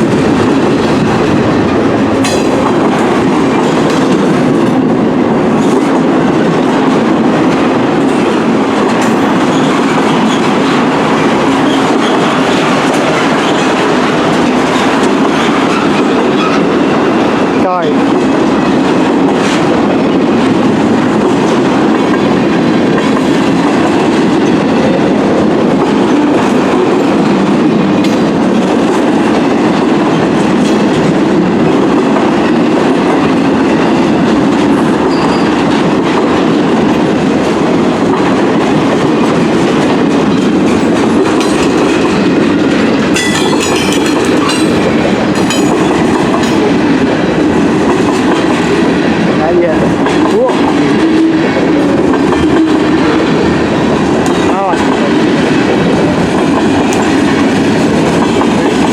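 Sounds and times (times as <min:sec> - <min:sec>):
clickety-clack over rail joints: 0:00.0 - 0:58.9
train wheels rumbling on rails: 0:00.0 - 0:58.9.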